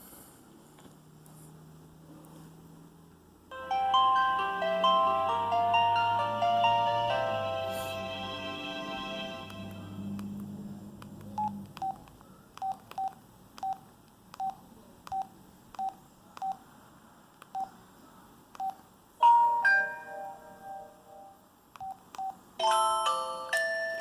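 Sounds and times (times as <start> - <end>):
phone ringtone melody: 3.5 - 10.2, 19.2 - 21.3, 22.6 - 24.0.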